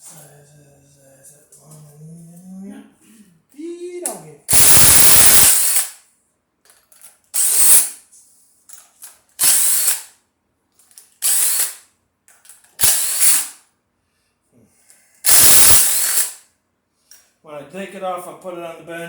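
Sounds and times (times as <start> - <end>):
pneumatic wrench bursts: 4.5 - 6.0, 7.3 - 8.0, 9.4 - 10.2, 11.2 - 11.9, 12.8 - 13.6, 15.2 - 16.5
air hiss: 7.4 - 8.0, 9.4 - 10.1, 11.2 - 11.8, 12.8 - 13.6, 15.2 - 16.4.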